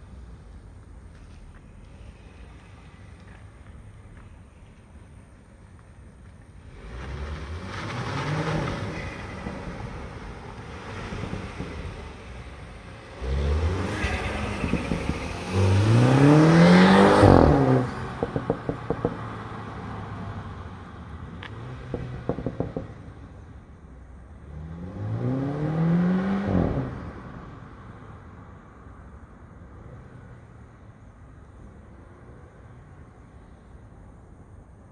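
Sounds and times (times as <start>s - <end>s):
car engine revving: 6.7s - 23.4s
exhaust crackling pops: 13.2s - 19.6s, 21.2s - 23.6s.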